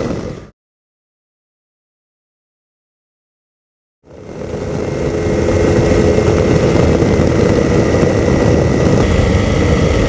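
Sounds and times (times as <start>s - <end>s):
airplane engine drone: 0.0s - 0.5s, 4.0s - 10.0s.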